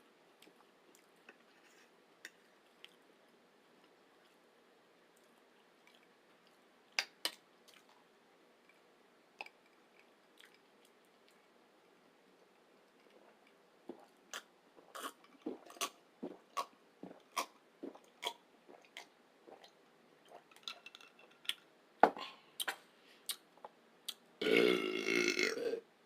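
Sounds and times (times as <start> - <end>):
chewing with wet mouth clicks: 9.4 - 11.5
loud burp: 24.4 - 25.8.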